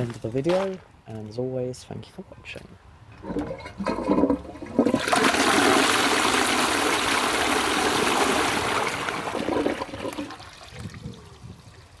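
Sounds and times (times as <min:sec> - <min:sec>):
toilet cistern flushing: 0:03.8 - 0:10.8
water trickling: 0:08.2 - 0:12.0.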